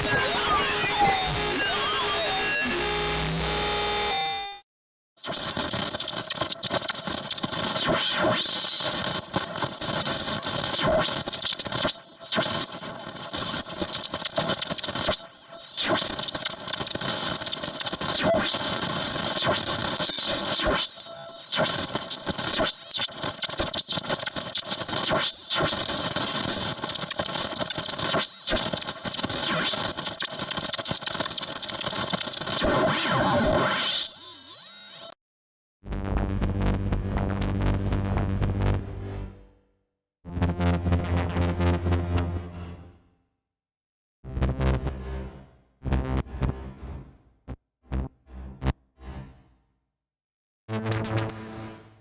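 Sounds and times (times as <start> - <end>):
harsh digital glitch noise: 0.0 - 4.6, 5.2 - 35.2.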